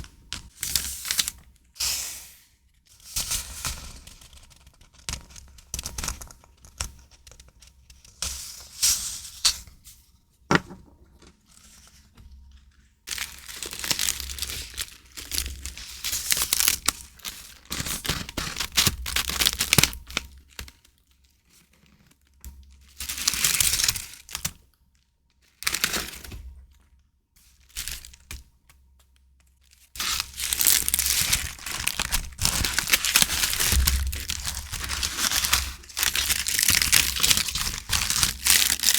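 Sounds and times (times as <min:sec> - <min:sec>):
packaging rustling and crinkling: 0:10.5 - 0:20.6, 0:29.7 - 0:38.9.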